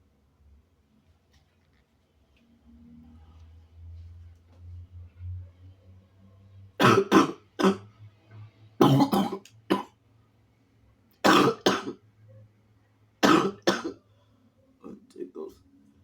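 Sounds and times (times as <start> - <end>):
man coughing: 8.8 - 9.9, 11.3 - 12.0, 13.2 - 14.0.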